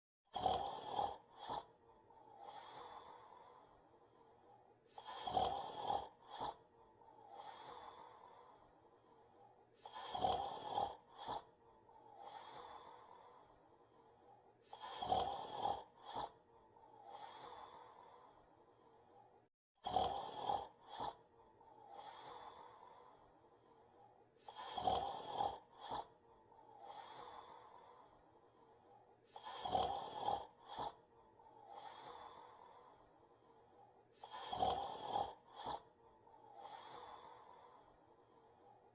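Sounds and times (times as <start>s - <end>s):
soft snoring: 0.3s - 38.9s.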